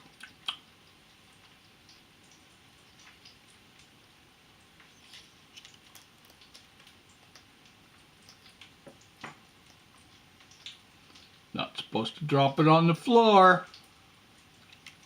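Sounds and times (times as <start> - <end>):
parrot beak crunching food: 5.0 - 7.5.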